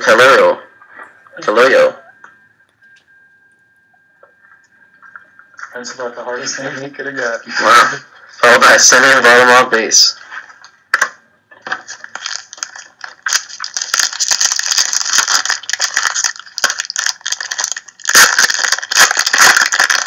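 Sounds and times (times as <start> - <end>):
card packs rustling and crackling: 11.6 - 20.0.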